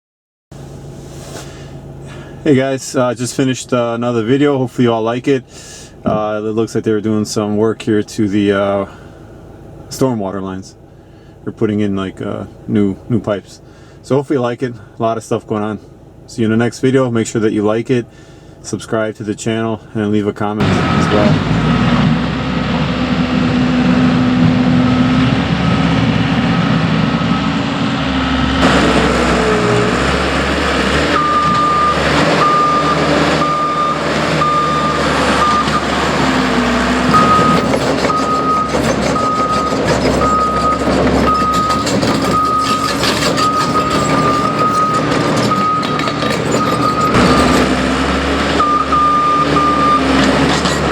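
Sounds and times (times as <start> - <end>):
heavy machine diesel engines: 0.6 - 18.8, 19.6 - 50.9
backup alarm beeping: 20.6 - 22.0, 30.9 - 50.8.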